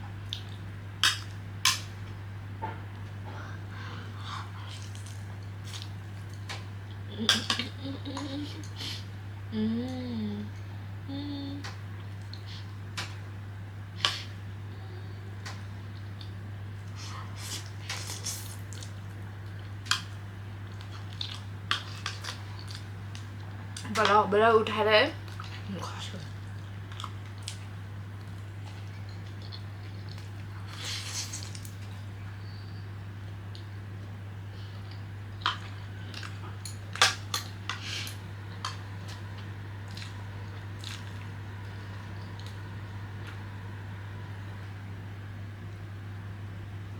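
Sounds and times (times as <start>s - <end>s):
steady low hum: 0.0s - 46.9s
wet chewing and mouth smacks: 39.8s - 41.3s.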